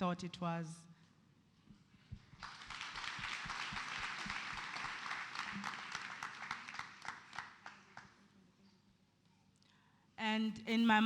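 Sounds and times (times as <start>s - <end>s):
congregation applauding: 2.4s - 8.0s.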